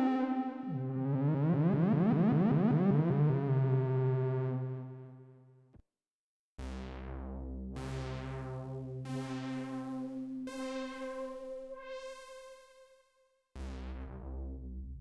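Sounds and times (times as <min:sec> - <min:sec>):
analog synthesizer notes: 0:00.0 - 0:05.3.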